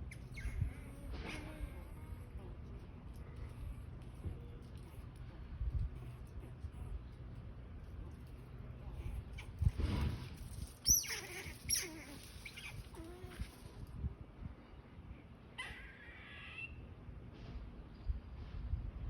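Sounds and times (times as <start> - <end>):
squirrels squeaking and chirping: 0.0 - 2.0, 10.5 - 13.6, 15.6 - 16.8.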